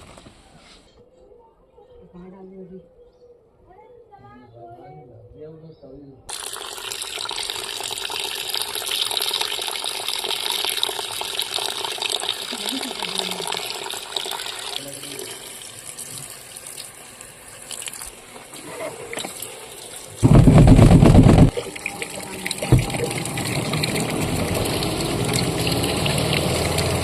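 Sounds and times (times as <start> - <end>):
water running into washing machine: 6.3 - 27.0
loud low rumble: 20.2 - 21.5.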